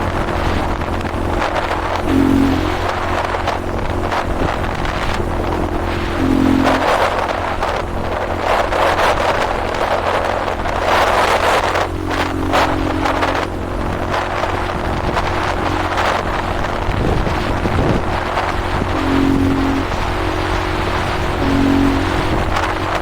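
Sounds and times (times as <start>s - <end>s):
dirt bike engine running: 0.0s - 23.0s
wind buffeting microphone: 0.0s - 23.0s.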